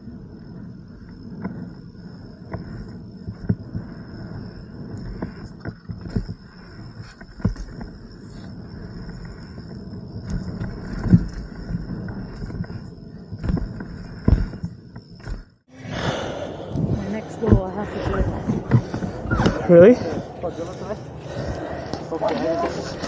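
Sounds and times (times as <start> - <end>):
bike tyre rumble on dirt: 0.0 - 23.0
bike knocks and rattles: 2.4 - 15.6.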